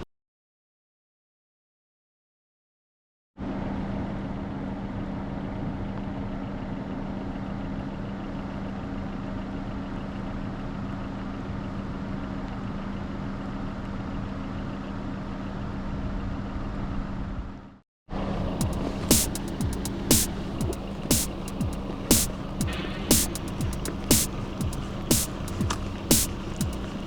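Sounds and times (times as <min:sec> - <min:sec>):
road noise hiss: 0:18.2 - 0:27.0
car engine hum: 0:18.4 - 0:27.0.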